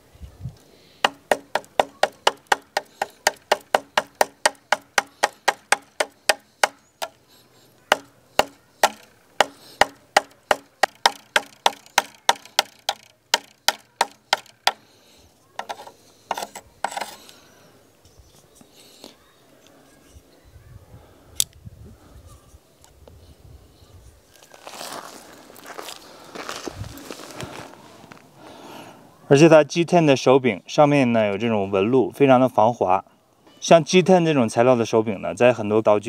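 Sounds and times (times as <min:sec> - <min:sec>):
knife chopping into wood: 0:01.0 - 0:07.2, 0:07.9 - 0:14.8, 0:15.6 - 0:17.2
soft rustling: 0:23.8 - 0:28.3.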